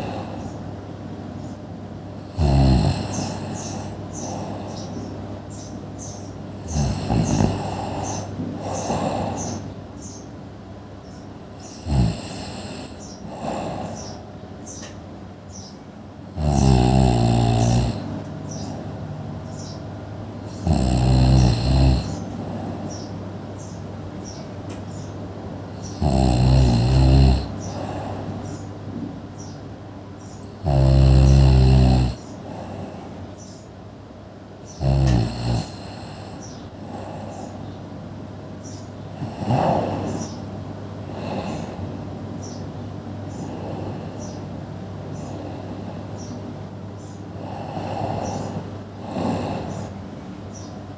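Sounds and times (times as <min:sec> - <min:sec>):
loud snores: 0:00.0 - 0:00.5, 0:02.1 - 0:04.9, 0:06.5 - 0:09.7, 0:11.6 - 0:14.2, 0:16.2 - 0:18.8, 0:20.4 - 0:23.0, 0:25.7 - 0:28.4, 0:30.4 - 0:33.2, 0:34.6 - 0:37.6, 0:39.1 - 0:42.0, 0:43.4 - 0:44.4, 0:47.4 - 0:50.0.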